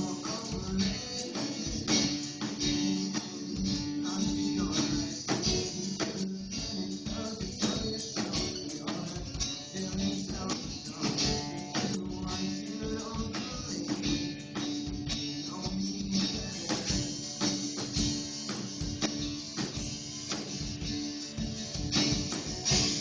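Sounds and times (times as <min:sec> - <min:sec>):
strummed song: 0:00.0 - 0:23.0.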